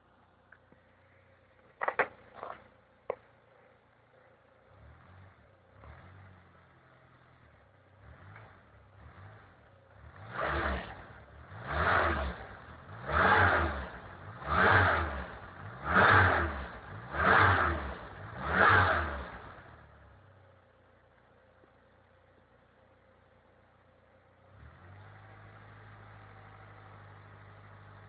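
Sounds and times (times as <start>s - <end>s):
car engine revving: 4.1s - 20.2s.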